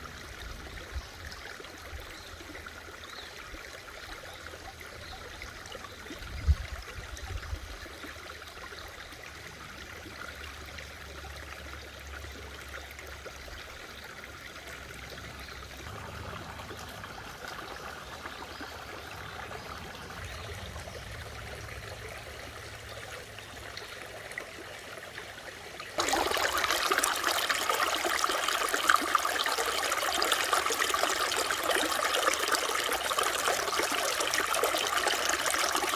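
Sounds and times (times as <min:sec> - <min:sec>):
stream flowing over rocks: 0:08.3 - 0:35.9.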